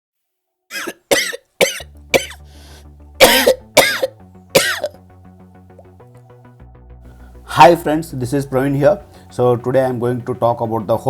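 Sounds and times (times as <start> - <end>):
person coughing: 0.7 - 2.4, 3.2 - 5.0
soft background music: 0.7 - 11.0.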